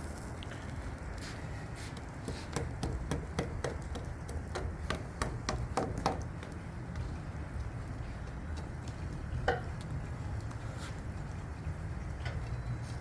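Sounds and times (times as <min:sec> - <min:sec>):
sharp taps and knocks: 0:02.2 - 0:07.1.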